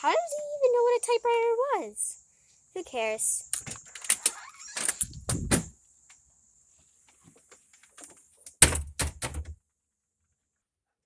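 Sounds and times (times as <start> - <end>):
loud thump and knocks: 5.1 - 5.7, 8.6 - 9.6.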